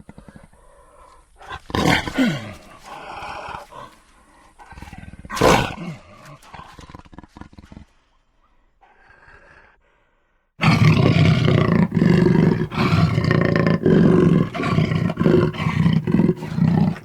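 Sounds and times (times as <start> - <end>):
rough growl: 0.0 - 8.2, 8.8 - 17.0
jaguar roaring: 10.6 - 17.0.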